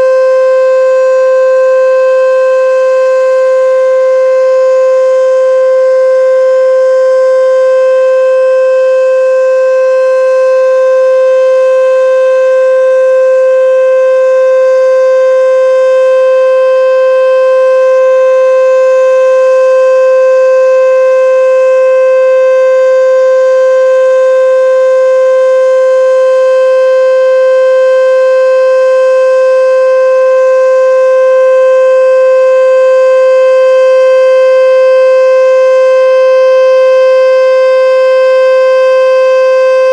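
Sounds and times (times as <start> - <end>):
civil defense siren steady tone: 0.0 - 39.9.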